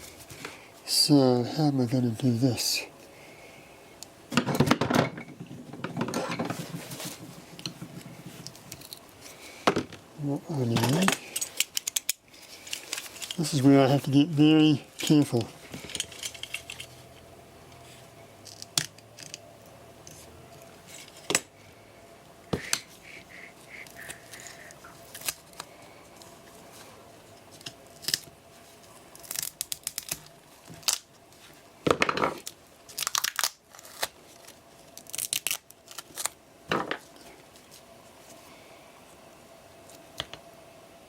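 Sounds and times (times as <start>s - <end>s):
tape tearing and crinkling: 10.8s - 13.6s, 23.9s - 26.3s, 27.5s - 31.2s, 32.3s - 36.4s.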